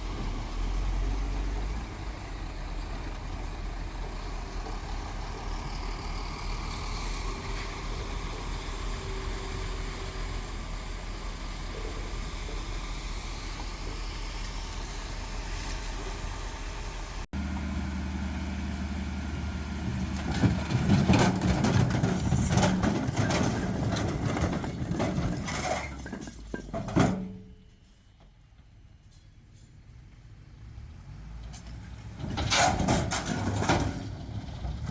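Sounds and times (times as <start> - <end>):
diesel construction machinery: 0.0 - 34.9
machine clanks and knocks: 20.1 - 27.6, 32.2 - 34.9.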